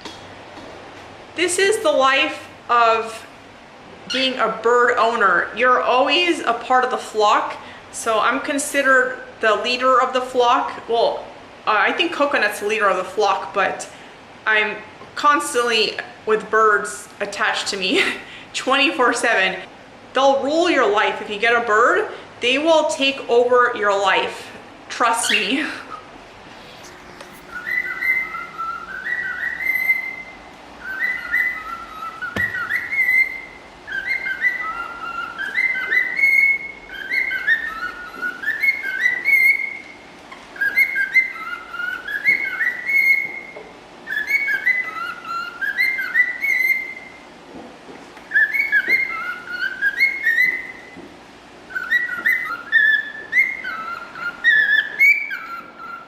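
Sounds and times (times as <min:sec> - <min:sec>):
cockatiel whistling a tune: 0:26.6 - 0:40.0, 0:40.6 - 0:47.2, 0:48.3 - 0:51.0, 0:51.7 - 0:56.0.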